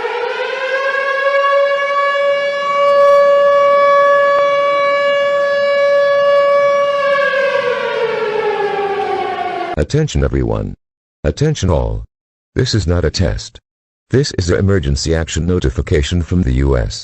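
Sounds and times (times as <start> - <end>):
civil defense siren wailing: 0.0 - 9.8.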